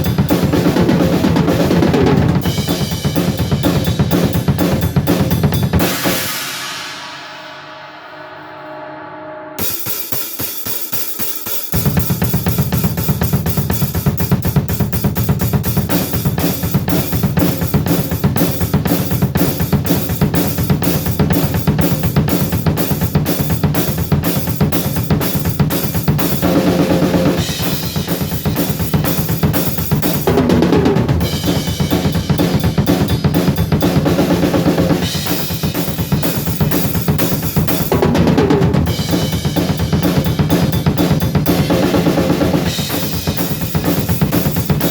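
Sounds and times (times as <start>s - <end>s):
cymbal hits: 5.8s - 12.5s.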